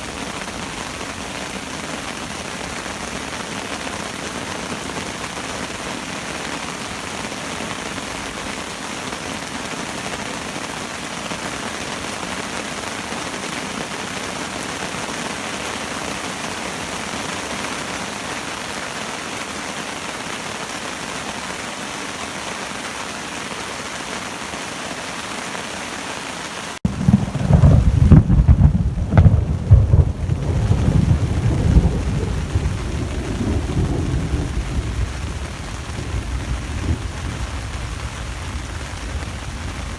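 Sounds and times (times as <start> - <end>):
steady rain: 0.0 - 39.9
rolling thunder rumble: 26.9 - 39.9.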